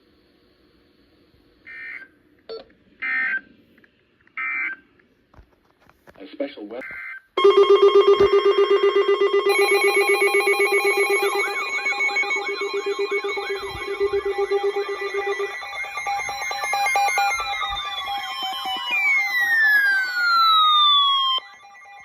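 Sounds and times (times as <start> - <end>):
falling alarm tones: 7.4 - 22.0
rapid pulsing beep: 7.4 - 22.0
steady alarm tones: 7.4 - 22.0
warbling siren sweep: 7.4 - 22.0.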